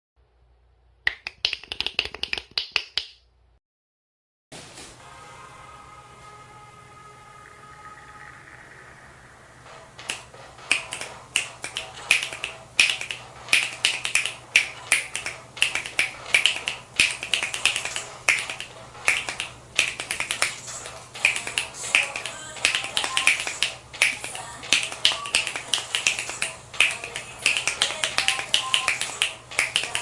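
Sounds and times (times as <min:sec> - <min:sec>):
rhythmic finger snaps: 0:01.1 - 0:03.2, 0:09.7 - 0:30.0.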